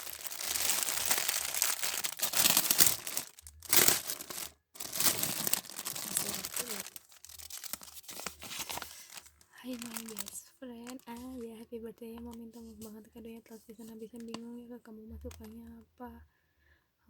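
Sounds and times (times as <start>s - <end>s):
wrapping paper crinkling and tearing: 0.0s - 11.4s.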